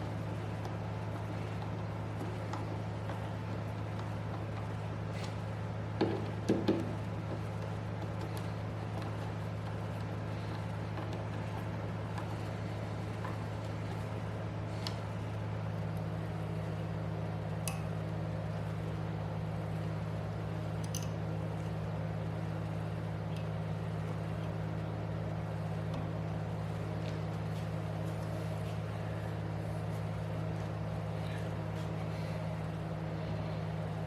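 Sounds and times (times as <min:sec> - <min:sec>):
low machine hum: 0:00.0 - 0:34.0.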